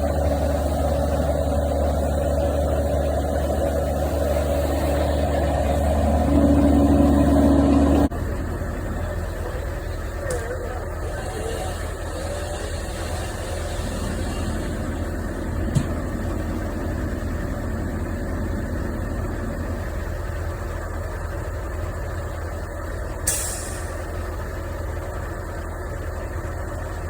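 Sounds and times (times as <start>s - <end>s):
truck engine running: 0.0s - 27.0s
short hiss: 23.3s - 24.1s.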